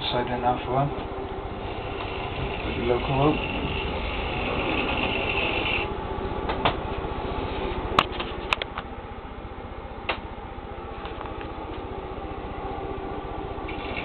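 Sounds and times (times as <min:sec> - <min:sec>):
model train motor hum: 0:01.5 - 0:05.9, 0:13.6 - 0:14.0.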